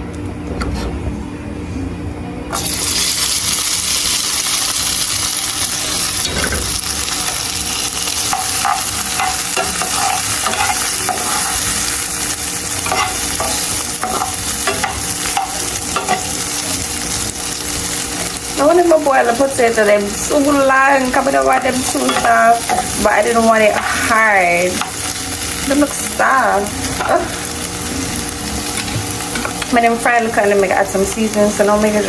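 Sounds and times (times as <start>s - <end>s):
potatoes sizzling in hot oil: 2.6s - 32.0s
utensil scraping pot: 6.1s - 16.6s, 20.3s - 25.2s.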